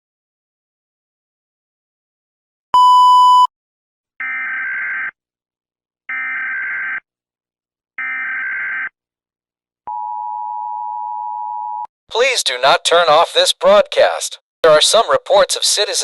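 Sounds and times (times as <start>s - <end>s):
loud beep: 2.8s - 3.5s.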